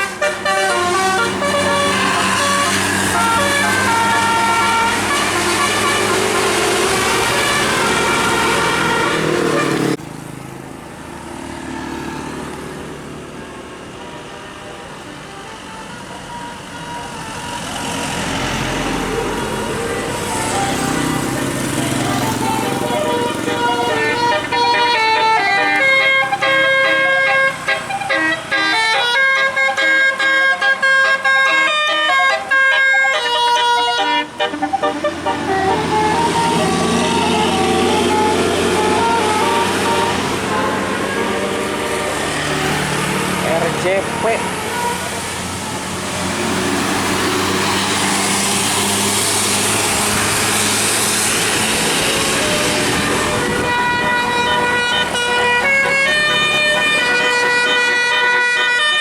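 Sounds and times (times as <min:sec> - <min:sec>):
musical air horn playing tune: 0:00.0 - 0:10.0, 0:19.2 - 0:42.9, 0:50.4 - 0:59.0
tour bus driving past: 0:00.0 - 0:59.0.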